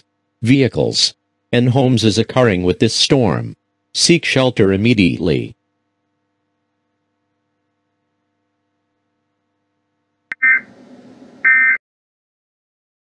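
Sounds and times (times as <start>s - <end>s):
shrill warbling digital tone bursts: 10.3s - 10.7s.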